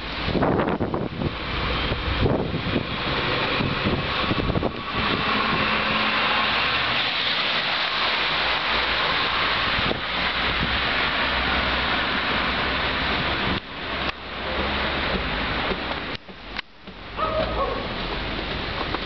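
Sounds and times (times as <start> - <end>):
blizzard wind buffeting microphone: 0.0 - 6.0.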